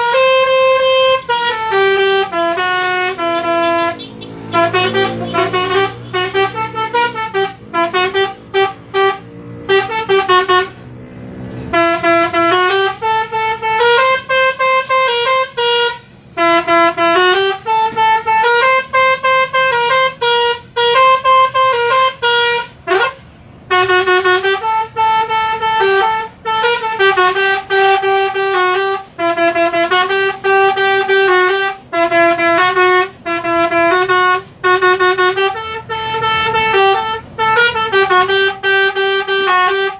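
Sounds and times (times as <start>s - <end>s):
bus horn playing a tune: 0.0s - 39.9s.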